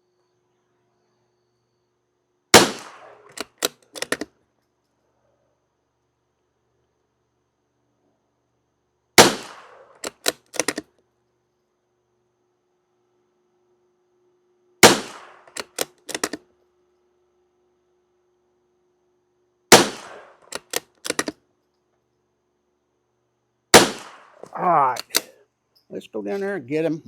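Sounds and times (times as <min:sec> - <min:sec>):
rifle shots: 0:02.5 - 0:04.2, 0:09.2 - 0:10.8, 0:14.8 - 0:16.4, 0:19.7 - 0:21.3, 0:23.7 - 0:25.2
rifle bolt metallic clicks: 0:02.8 - 0:04.3, 0:09.5 - 0:10.9, 0:15.5 - 0:16.4, 0:20.0 - 0:21.4, 0:24.9 - 0:25.3.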